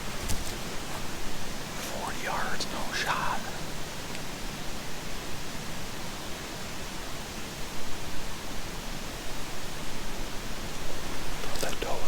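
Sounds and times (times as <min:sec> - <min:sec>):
steady rushing hiss: 0:00.0 - 0:06.1.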